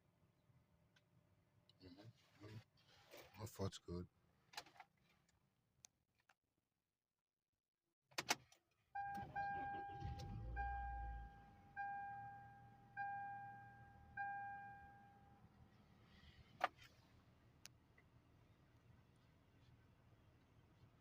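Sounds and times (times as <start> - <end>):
car warning chime dinging: 9.0 - 15.4.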